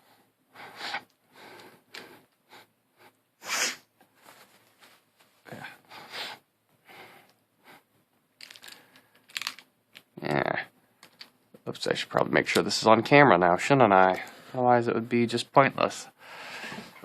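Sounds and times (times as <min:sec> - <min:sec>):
plastic puzzle pieces rustling and clicking: 0:08.4 - 0:10.2, 0:11.0 - 0:11.4.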